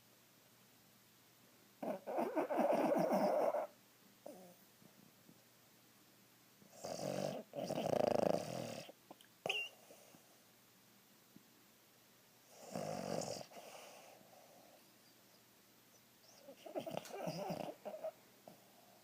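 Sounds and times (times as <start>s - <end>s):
dog snoring: 1.8s - 4.6s, 6.7s - 10.0s, 12.5s - 14.8s, 16.4s - 19.0s.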